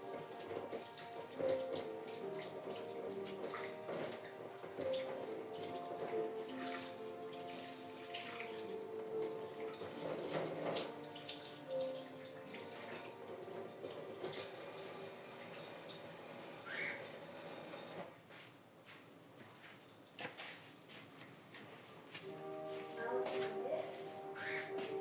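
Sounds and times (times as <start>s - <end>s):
tap water running into sink: 0.0s - 18.1s.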